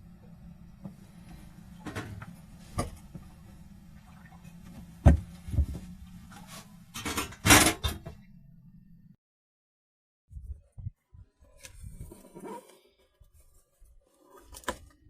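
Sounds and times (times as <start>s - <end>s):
faint low hum: 0.0s - 9.2s.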